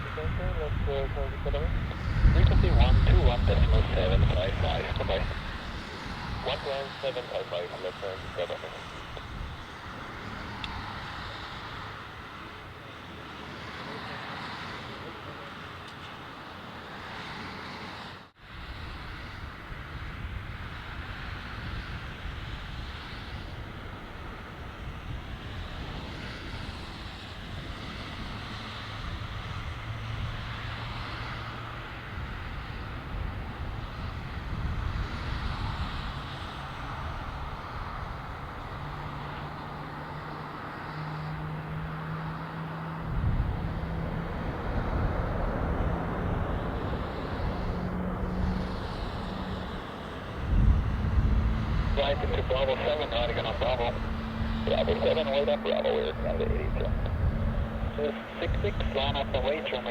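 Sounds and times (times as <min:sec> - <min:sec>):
jet engines landing: 0:00.0 - 0:59.9
wind: 0:00.0 - 0:59.9
low hum rising in steps: 0:38.7 - 0:59.9.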